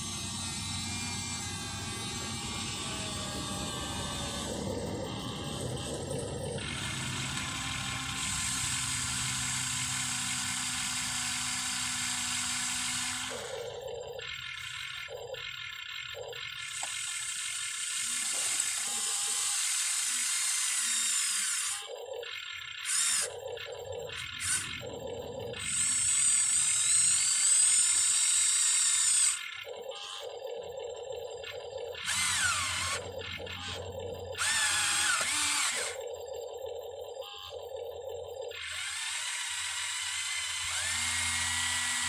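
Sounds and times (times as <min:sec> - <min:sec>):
small electric motors whirring: 0:00.0 - 0:42.0.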